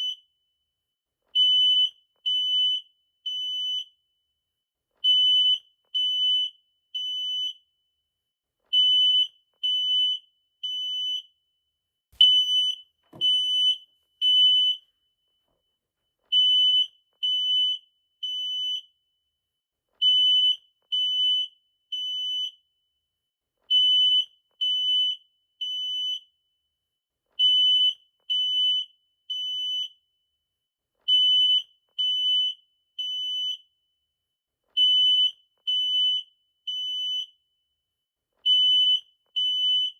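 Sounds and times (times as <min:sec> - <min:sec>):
smoke detector beeping: 0:12.2 - 0:13.8.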